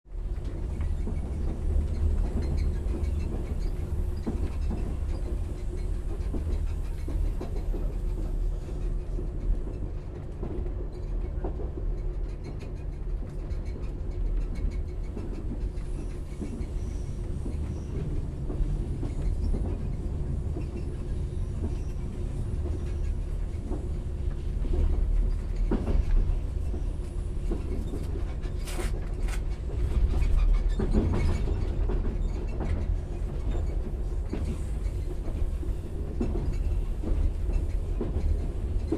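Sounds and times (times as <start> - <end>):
train rumbling: 0.1 - 38.9.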